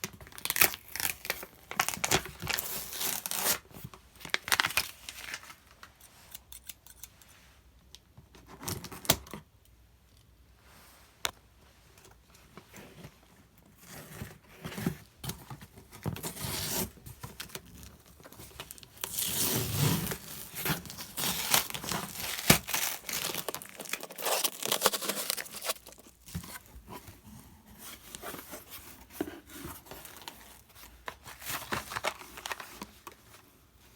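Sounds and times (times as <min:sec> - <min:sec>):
plastic and paper crinkling: 0:00.0 - 0:07.1, 0:14.6 - 0:33.9
tape and wrapping tearing: 0:00.4 - 0:03.6, 0:18.6 - 0:26.6.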